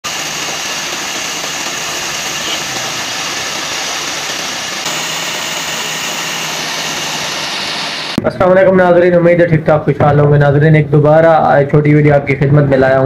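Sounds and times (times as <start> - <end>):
woodworking machine motor running: 0.0 - 8.2.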